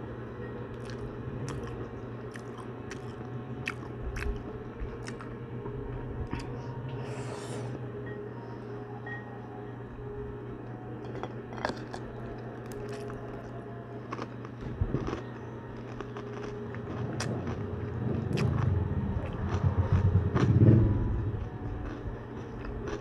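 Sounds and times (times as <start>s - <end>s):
steady low hum: 0.0s - 23.0s
crunching and chewing pork rinds: 0.7s - 5.4s, 6.2s - 6.6s, 11.0s - 23.0s
low rumble: 16.8s - 23.0s.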